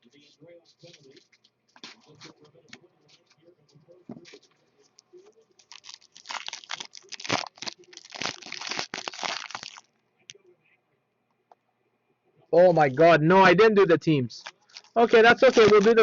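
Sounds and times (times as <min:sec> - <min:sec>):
plastic wrapper crinkling: 0:05.6 - 0:09.9, 0:14.4 - 0:16.0.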